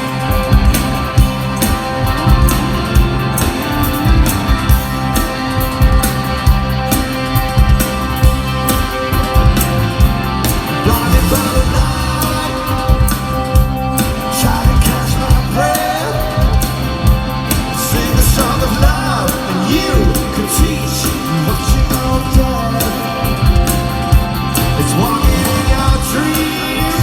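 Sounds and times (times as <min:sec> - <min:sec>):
live rock band playing: 0:00.0 - 0:27.0
steady drum beat: 0:00.0 - 0:27.0
person singing: 0:10.6 - 0:16.8, 0:17.6 - 0:23.6, 0:24.7 - 0:27.0.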